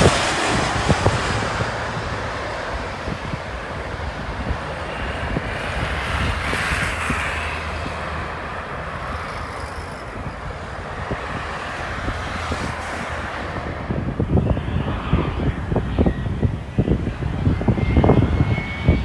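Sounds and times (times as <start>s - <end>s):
jet engines rumbling: 0.0s - 19.0s
wind buffeting microphone: 0.0s - 19.0s.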